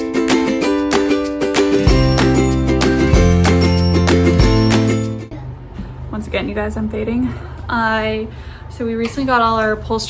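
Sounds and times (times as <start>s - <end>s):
plucked string tune: 0.0s - 5.3s
deep bass: 1.9s - 5.4s.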